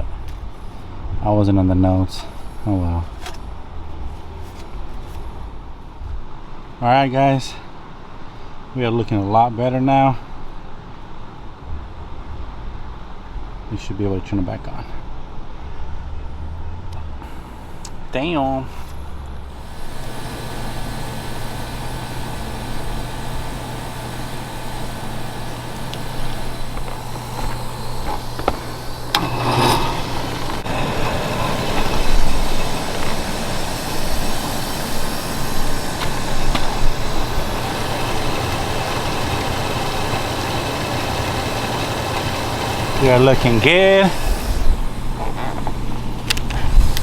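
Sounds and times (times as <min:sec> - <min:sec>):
exhaust fan low hum: 0:00.0 - 0:47.0
rush of air and machinery: 0:17.0 - 0:47.0.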